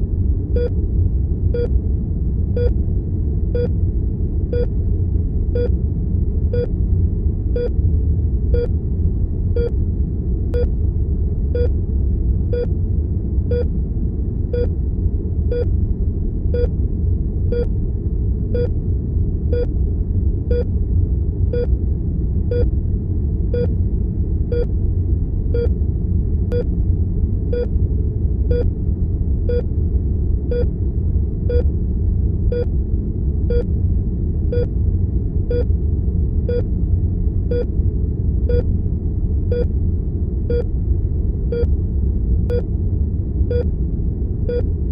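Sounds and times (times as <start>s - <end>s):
low room tone and equipment hum: 0.0s - 44.9s
heart monitor beeping: 14.5s - 14.7s, 19.5s - 19.7s, 31.5s - 31.7s, 34.5s - 34.7s, 36.5s - 36.7s, 41.5s - 41.7s, 44.5s - 44.7s.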